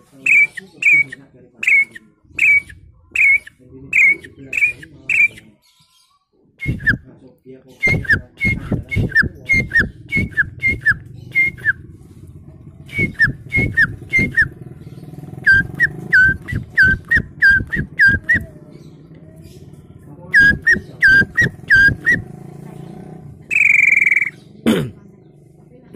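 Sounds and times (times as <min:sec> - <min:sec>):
person whistling birdsong chirps: 0:00.3 - 0:05.5, 0:07.8 - 0:11.8, 0:12.9 - 0:14.5, 0:15.4 - 0:18.5, 0:20.4 - 0:22.2, 0:23.5 - 0:24.4.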